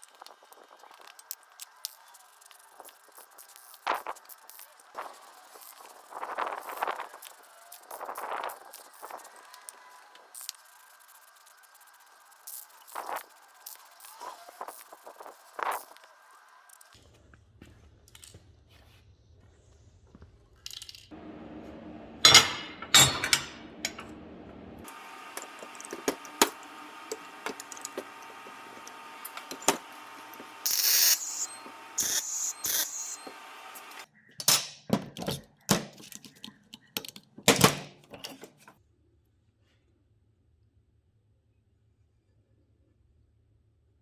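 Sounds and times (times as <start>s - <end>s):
metal parts clanking: 22.3s - 24.1s.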